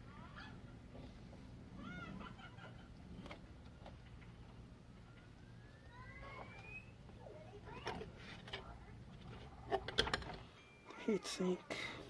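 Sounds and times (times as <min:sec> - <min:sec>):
low steady hum: 0:00.0 - 0:12.0
faint bird chirps: 0:05.4 - 0:07.0.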